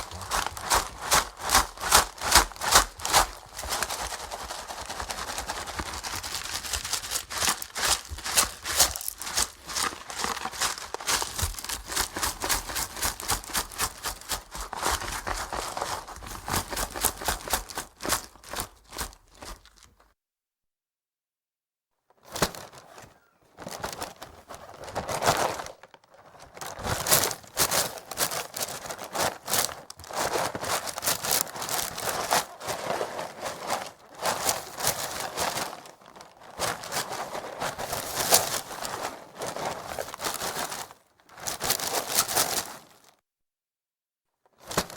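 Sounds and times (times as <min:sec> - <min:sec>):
cereal flakes rattling in box: 0:00.0 - 0:19.9, 0:23.6 - 0:43.1
plastic bag crinkling: 0:00.0 - 0:19.9, 0:23.6 - 0:43.1.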